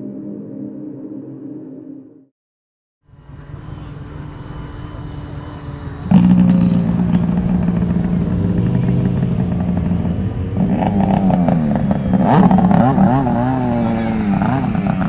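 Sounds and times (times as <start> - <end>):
snowmobile engines revving: 3.2 - 15.0.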